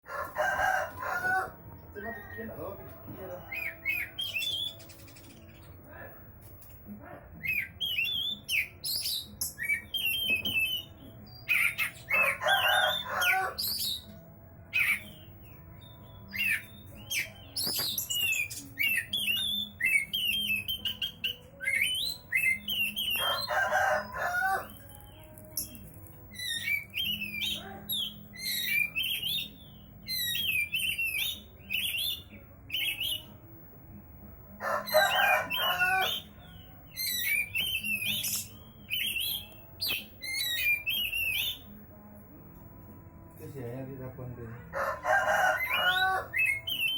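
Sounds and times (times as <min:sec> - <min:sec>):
rooster crowing: 0:00.1 - 0:01.6, 0:12.1 - 0:13.6, 0:23.2 - 0:24.7, 0:34.6 - 0:36.3, 0:44.6 - 0:46.4
magpie-robin whistled song: 0:00.5 - 0:05.7, 0:07.4 - 0:33.5, 0:34.6 - 0:41.9, 0:44.8 - 0:46.9.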